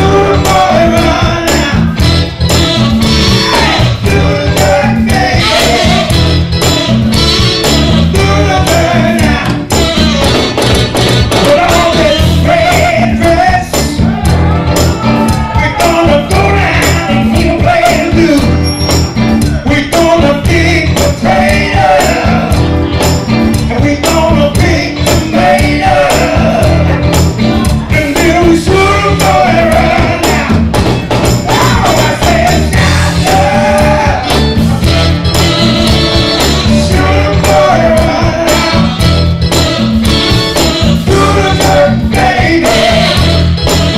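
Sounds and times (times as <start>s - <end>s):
upbeat soul music: 0.0s - 43.9s.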